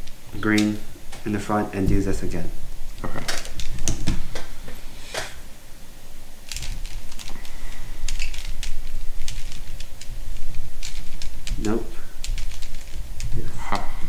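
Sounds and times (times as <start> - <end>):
puzzle cube clicking: 6.5 - 13.5.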